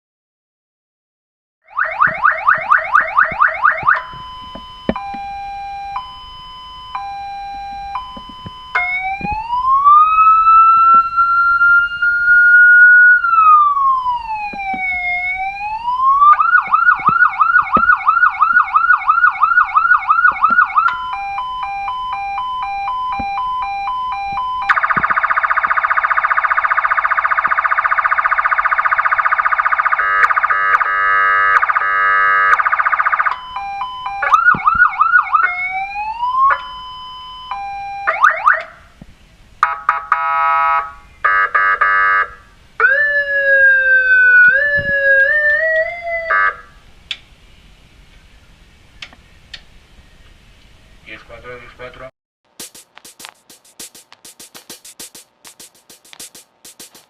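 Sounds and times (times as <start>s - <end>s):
harsh horn-like siren blast: 1.6s - 38.9s, 39.6s - 46.8s
electronic siren wail: 1.6s - 39.0s, 39.6s - 46.8s
rapid pulsing siren tones: 1.6s - 39.0s, 39.6s - 46.9s
siren yelp: 1.6s - 39.0s, 39.6s - 46.8s
alternating two-note siren tone: 1.7s - 39.0s, 39.6s - 46.8s.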